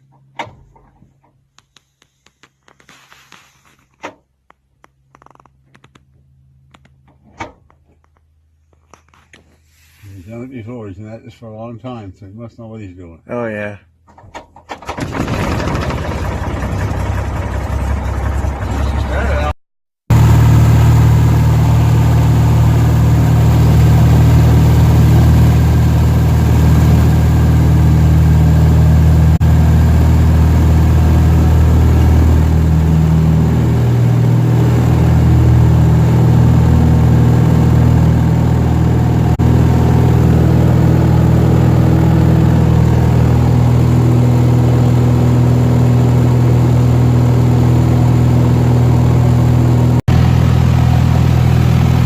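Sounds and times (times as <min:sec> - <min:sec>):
propeller plane engine drone: 0:14.9 - 0:19.5, 0:20.1 - 0:52.0.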